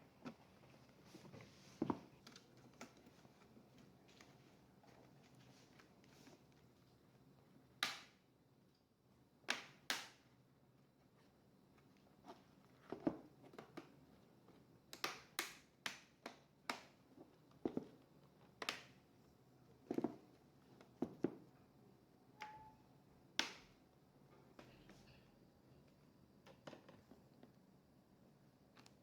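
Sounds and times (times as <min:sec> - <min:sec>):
faint tone: 0:22.4 - 0:22.9.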